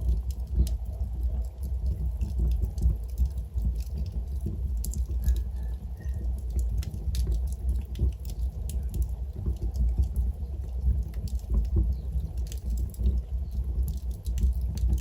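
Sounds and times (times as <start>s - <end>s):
fire crackling and popping: 0.0s - 15.0s
fire rumbling: 0.0s - 15.0s
faint whistle: 5.5s - 6.2s.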